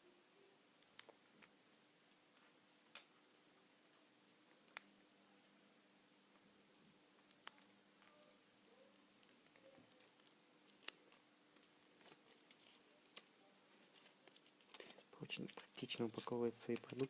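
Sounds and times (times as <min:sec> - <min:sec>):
packaging crinkling and tearing: 0:06.7 - 0:17.0.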